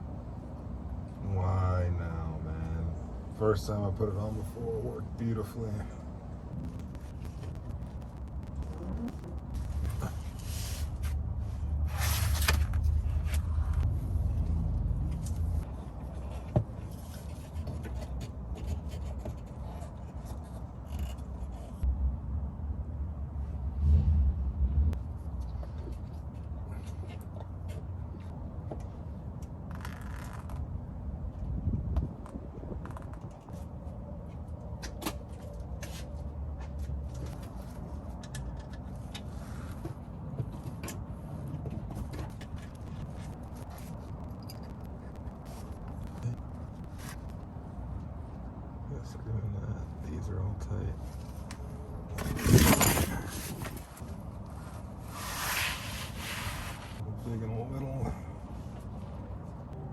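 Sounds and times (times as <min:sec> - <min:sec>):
steady low rumble: 0:00.0 - 0:17.7, 0:19.3 - 0:34.8, 0:41.1 - 0:55.1
low rumble: 0:06.4 - 0:16.0, 0:21.8 - 0:25.3.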